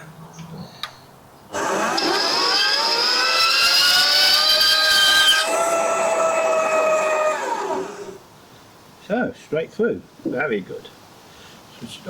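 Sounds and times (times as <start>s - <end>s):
band saw cutting metal whine: 1.5s - 8.2s.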